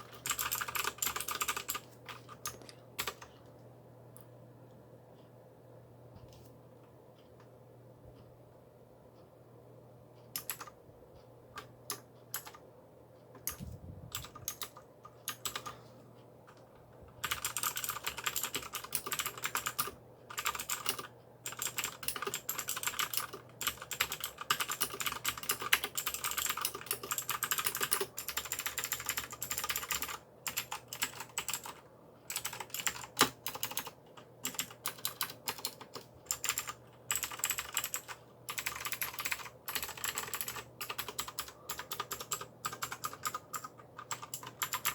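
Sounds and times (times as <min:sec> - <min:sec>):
clicky mechanical keyboard typing: 0:00.0 - 0:03.4, 0:10.4 - 0:10.8, 0:11.5 - 0:12.6, 0:13.4 - 0:15.8, 0:16.5 - 0:44.9.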